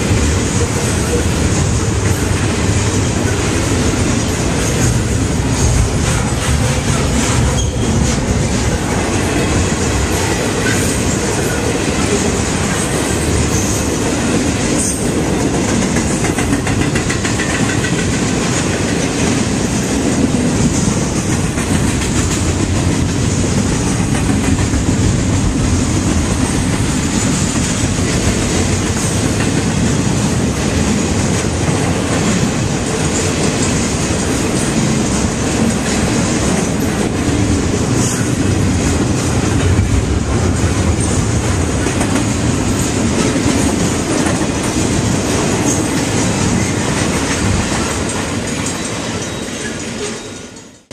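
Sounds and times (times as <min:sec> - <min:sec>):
freight train wheels clattering: 0:00.0 - 0:50.9.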